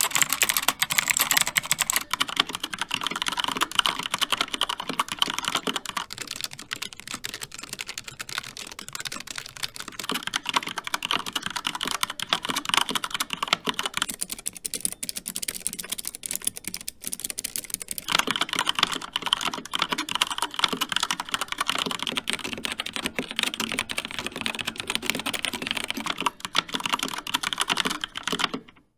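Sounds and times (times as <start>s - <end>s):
fast mechanical keyboard typing: 0.0s - 28.9s.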